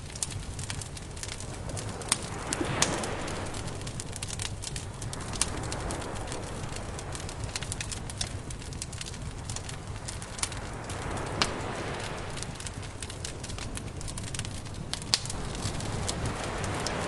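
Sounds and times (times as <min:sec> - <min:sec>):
campfire crackling and popping: 0:00.0 - 0:17.0
steady low rumble: 0:00.0 - 0:17.0.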